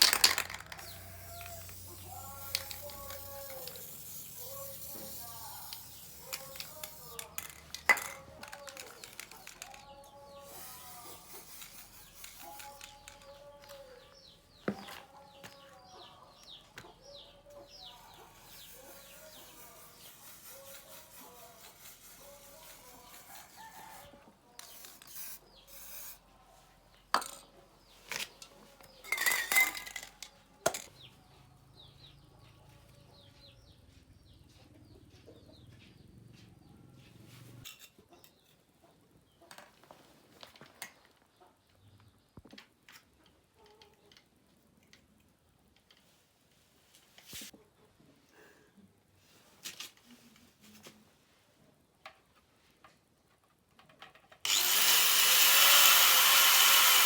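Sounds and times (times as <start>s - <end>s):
clattering: 0.0s - 1.8s, 28.1s - 30.9s.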